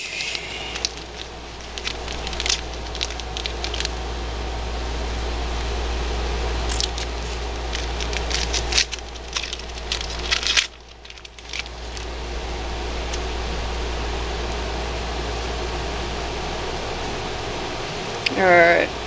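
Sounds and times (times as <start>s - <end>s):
wrapper crinkling and tearing: 0.0s - 4.0s, 6.7s - 12.1s
background hum: 0.0s - 19.0s.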